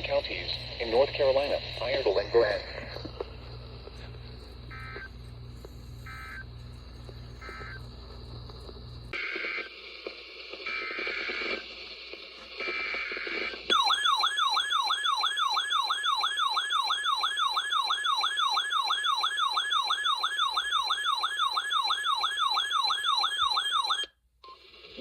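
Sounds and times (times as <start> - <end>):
siren-like electronic attention signal: 4.7 - 5.2, 6.0 - 6.5, 7.3 - 7.8
buzzy two-tone data bursts: 7.4 - 7.9.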